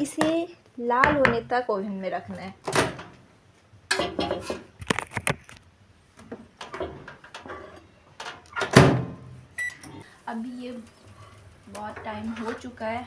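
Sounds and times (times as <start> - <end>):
microwave door shutting: 2.6 - 3.2, 8.2 - 9.9
dish clicks and knocks: 3.9 - 5.0.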